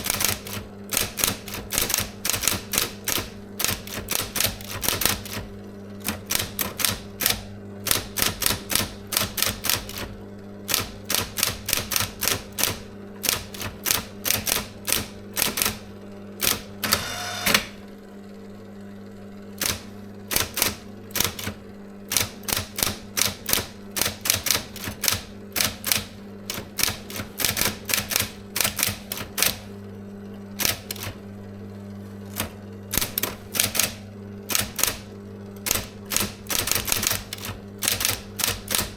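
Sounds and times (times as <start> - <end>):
electric typewriter typing: 0.0 - 17.8, 19.6 - 29.8, 30.5 - 31.3, 32.2 - 38.9
typewriter motor hum: 0.0 - 17.9, 19.4 - 38.9
mechanical whirr: 16.4 - 17.9.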